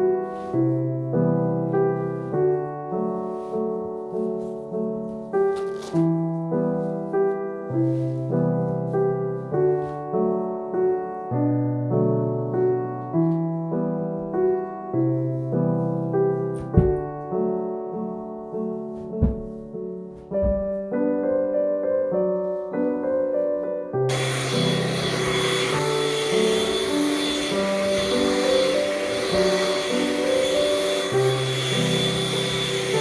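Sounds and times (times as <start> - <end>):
gentle piano melody: 0.0 - 33.0
soft thumps: 16.6 - 17.3, 19.0 - 20.9.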